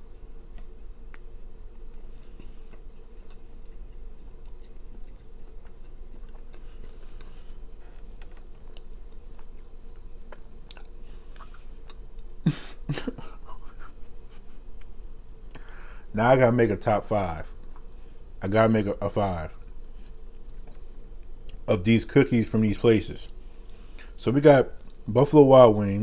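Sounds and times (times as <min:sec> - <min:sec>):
chewing cookie with mouth clicks: 0:00.4 - 0:12.4, 0:17.6 - 0:18.0, 0:19.6 - 0:21.7, 0:24.8 - 0:25.1.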